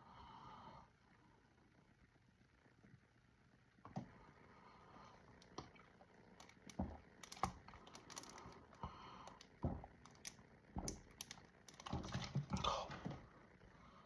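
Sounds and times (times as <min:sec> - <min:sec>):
plastic bottle clicks and thumps: 0:06.6 - 0:13.2.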